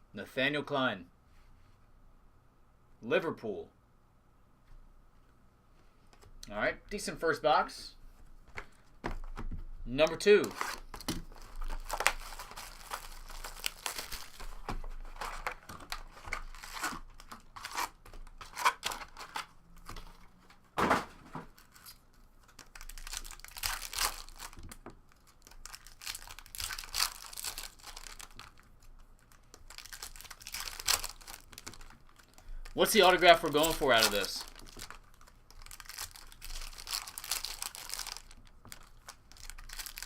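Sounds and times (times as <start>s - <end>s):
plastic wrapping crinkling and tearing: 10.5s - 20.3s, 21.5s - 40.0s.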